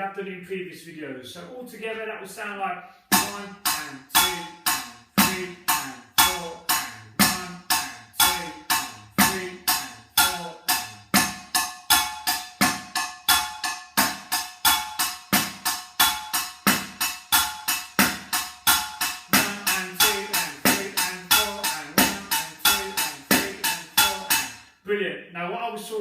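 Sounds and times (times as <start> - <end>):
low ringing tones: 3.1 - 24.6
drumsticks beating pots and pans: 3.1 - 24.7
high metallic taps: 3.1 - 24.7.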